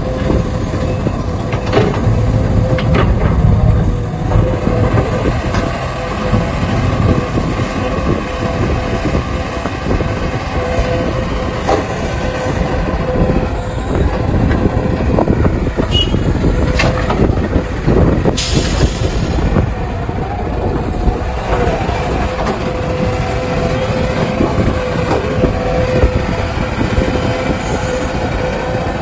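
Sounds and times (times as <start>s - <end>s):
diesel engine under load: 0.0s - 29.0s
metal clanks and knocks: 0.7s - 8.1s.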